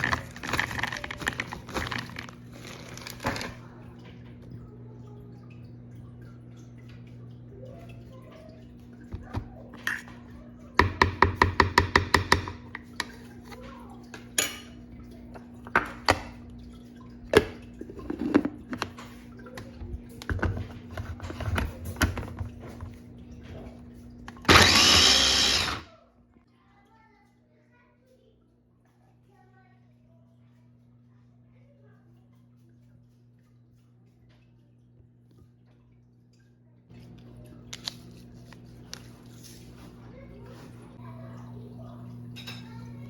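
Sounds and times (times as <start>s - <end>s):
kitchen knocks and clatter: 10.8s - 14.8s, 17.3s - 23.7s.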